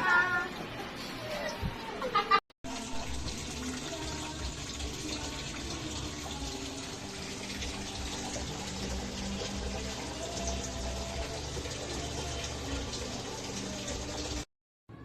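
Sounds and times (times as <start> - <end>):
water filling washing machine: 0.0 - 14.5.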